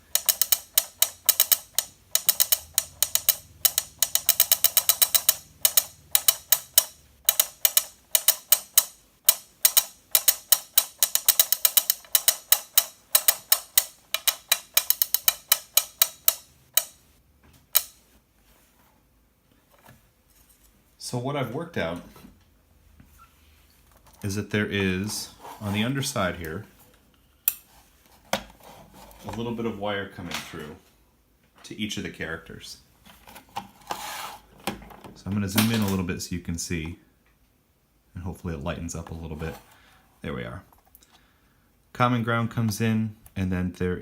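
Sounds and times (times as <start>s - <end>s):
plastic arms clicking and tapping: 0.0s - 17.0s, 17.7s - 18.0s.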